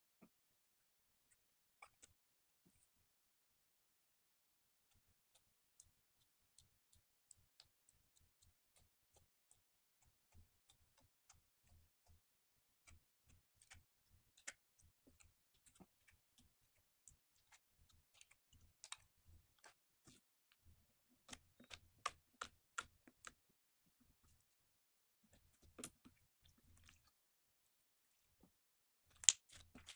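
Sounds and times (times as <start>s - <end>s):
slime squishing: 12.8s - 23.4s, 29.1s - 29.9s.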